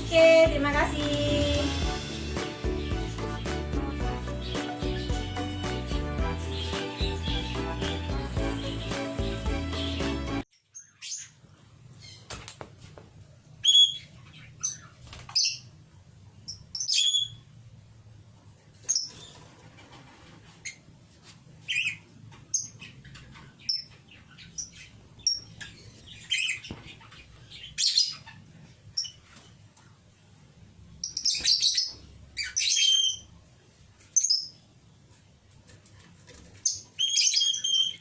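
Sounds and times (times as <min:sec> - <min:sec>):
lovebirds chirping: 0:00.0 - 0:12.4, 0:13.6 - 0:15.8, 0:16.4 - 0:17.6, 0:21.6 - 0:29.6, 0:30.9 - 0:33.4, 0:34.0 - 0:34.7, 0:36.5 - 0:38.0.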